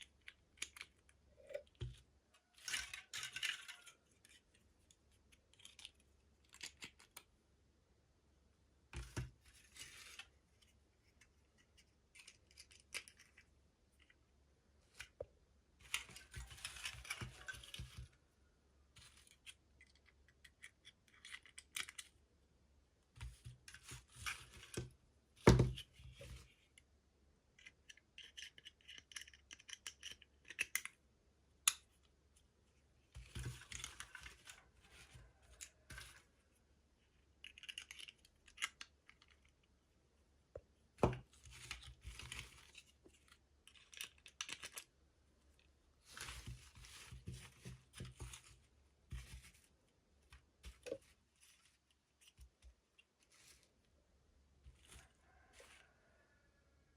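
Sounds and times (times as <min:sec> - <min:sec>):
small plastic pieces clicking: 0:00.0 - 0:01.9, 0:19.3 - 0:22.2, 0:27.6 - 0:31.0, 0:37.4 - 0:39.7, 0:43.6 - 0:44.9.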